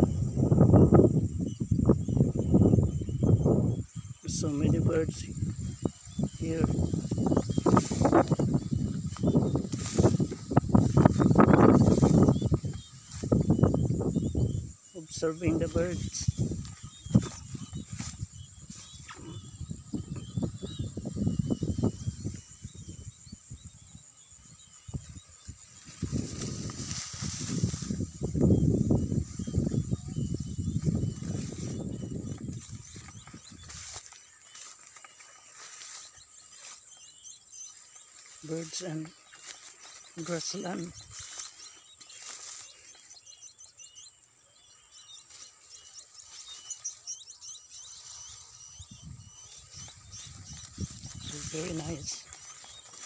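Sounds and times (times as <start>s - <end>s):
wind buffeting microphone: 0.0s - 34.7s, 37.7s - 42.7s, 47.8s - 53.0s
small birds chirping: 0.0s - 53.0s
steady high hiss: 24.0s - 31.9s.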